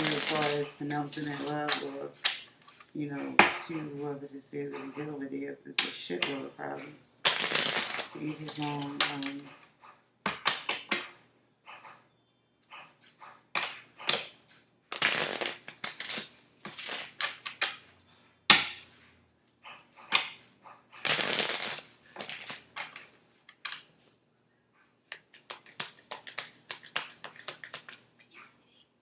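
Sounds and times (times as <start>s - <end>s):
cards being shuffled: 15.0s - 17.8s, 25.2s - 28.3s.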